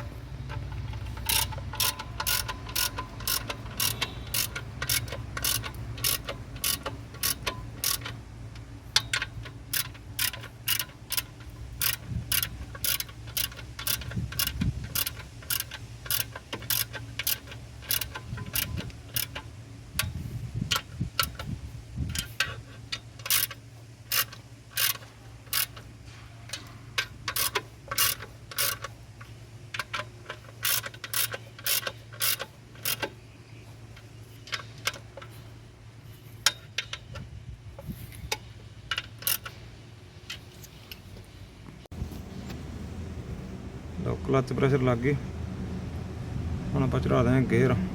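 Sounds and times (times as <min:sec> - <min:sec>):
ratchet wrench clicking: 0:00.0 - 0:35.6, 0:36.4 - 0:41.0
steady low hum: 0:00.0 - 0:47.9.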